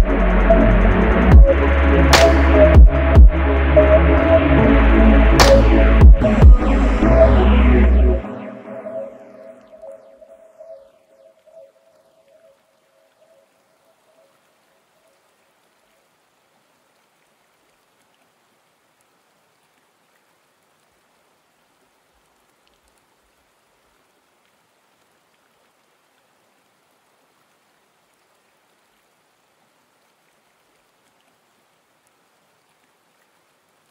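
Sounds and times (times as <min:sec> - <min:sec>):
music held tone: 0:00.0 - 0:14.3
faint rain-like hiss: 0:00.0 - 0:33.9.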